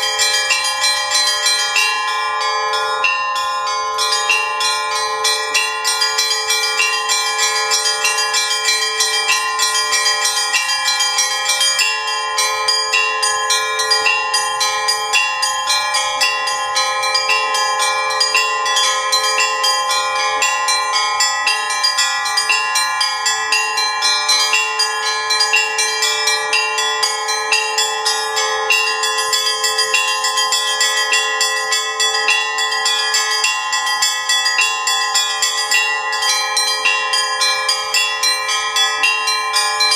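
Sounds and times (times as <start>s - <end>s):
mid-sized bells ringing: 0.0s - 39.9s
small high bells struck: 0.0s - 39.9s.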